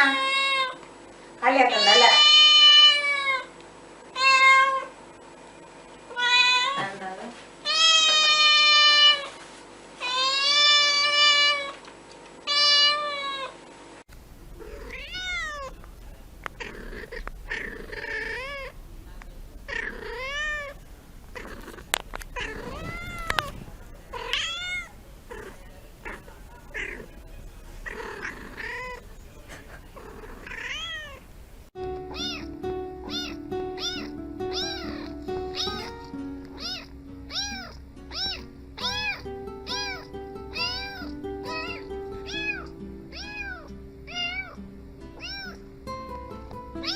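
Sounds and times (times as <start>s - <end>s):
cats meowing: 1.7s - 3.5s, 4.2s - 4.9s, 6.1s - 6.9s, 7.7s - 9.4s, 10.0s - 11.8s, 12.5s - 13.5s, 14.5s - 31.3s, 32.0s - 44.6s, 45.2s - 45.7s
background music with repeating melody: 31.8s - 44.0s, 45.9s - 46.9s.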